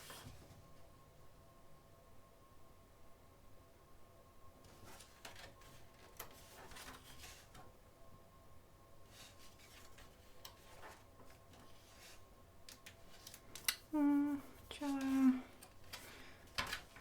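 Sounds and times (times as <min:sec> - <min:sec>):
magazine pages rustling: 0:04.7 - 0:07.7, 0:09.1 - 0:13.8, 0:14.6 - 0:17.0.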